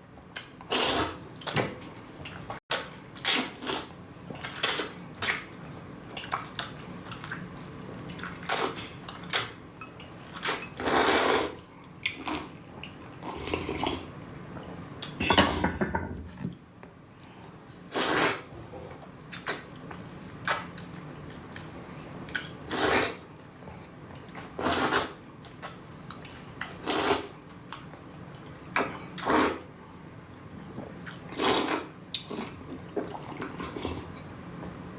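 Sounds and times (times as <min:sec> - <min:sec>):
noodles being slurped: 0:00.6 - 0:01.5, 0:03.2 - 0:05.5, 0:08.1 - 0:09.6, 0:10.2 - 0:12.6, 0:17.9 - 0:18.5, 0:22.3 - 0:23.4, 0:24.3 - 0:27.4, 0:28.8 - 0:29.8, 0:31.1 - 0:34.1.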